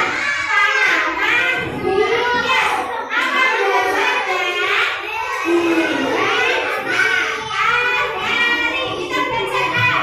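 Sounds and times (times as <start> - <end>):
children singing: 0.0 - 10.0.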